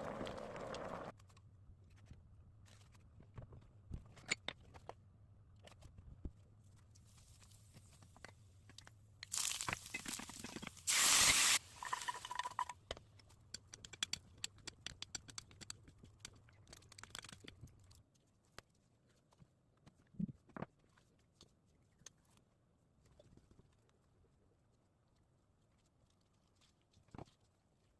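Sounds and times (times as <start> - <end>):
hiss: 10.9 - 11.8.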